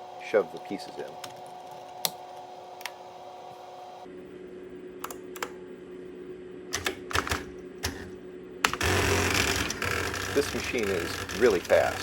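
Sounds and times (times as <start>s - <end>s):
printer servo buzzing hum: 8.7s - 12.0s.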